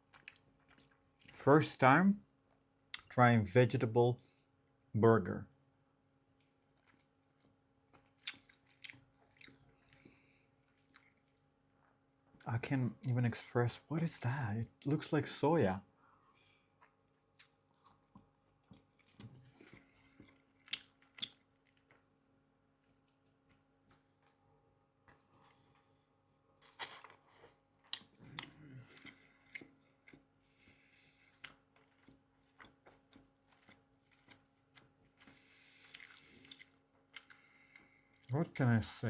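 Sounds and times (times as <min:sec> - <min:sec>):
faint chewing: 0:00.0 - 0:01.4, 0:06.3 - 0:13.2, 0:16.0 - 0:22.2, 0:22.8 - 0:38.4.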